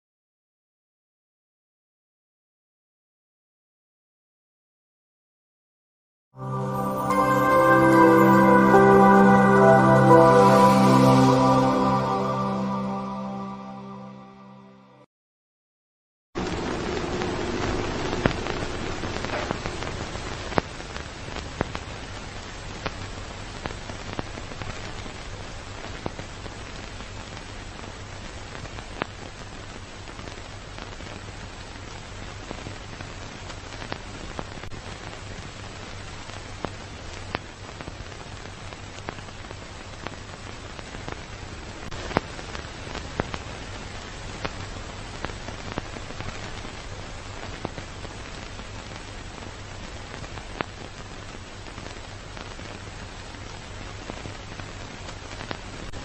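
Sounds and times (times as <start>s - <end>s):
hiss with crackle and pops: 16.4s - 56.0s.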